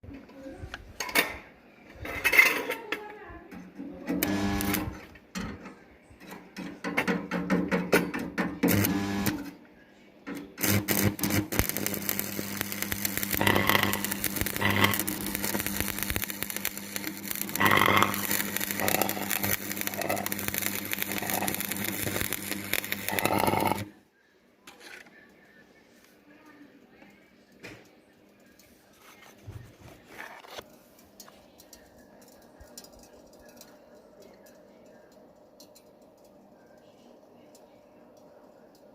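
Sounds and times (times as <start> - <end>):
welding arc crackling and buzzing: 4.2 - 5.0, 8.6 - 9.5, 10.6 - 23.9.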